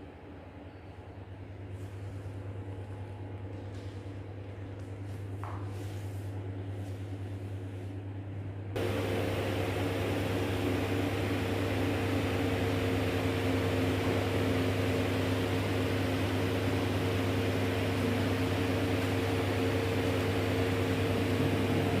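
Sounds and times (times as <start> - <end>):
noodle machine motor hum: 8.0 - 22.0.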